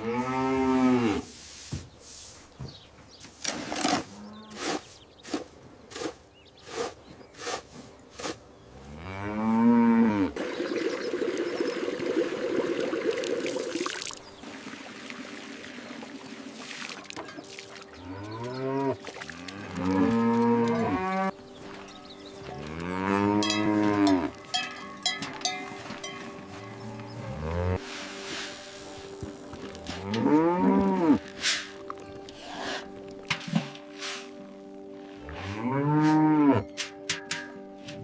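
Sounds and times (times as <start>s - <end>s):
cattle mooing: 18.1s - 21.3s, 26.7s - 27.8s, 29.9s - 31.3s, 35.3s - 36.7s.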